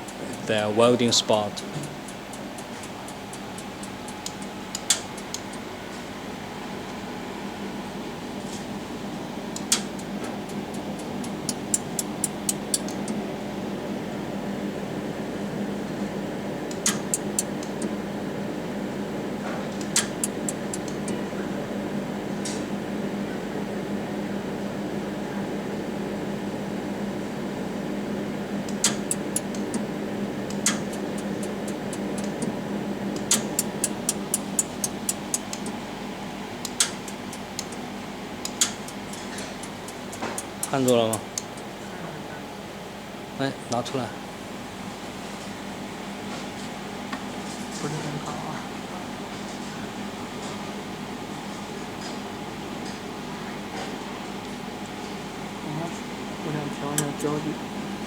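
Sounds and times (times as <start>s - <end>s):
laser welder ticks: 0.0s - 5.7s, 9.6s - 13.2s, 16.7s - 17.9s, 19.8s - 21.2s, 28.6s - 29.9s, 30.5s - 35.8s, 36.6s - 37.8s, 38.4s - 41.7s
cooling system hum: 0.0s - 58.0s.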